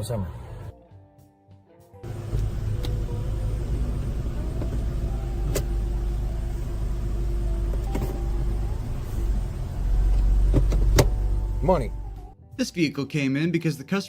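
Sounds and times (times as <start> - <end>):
car engine rumbling: 2.0 - 12.4
faint steady hum: 2.1 - 12.2.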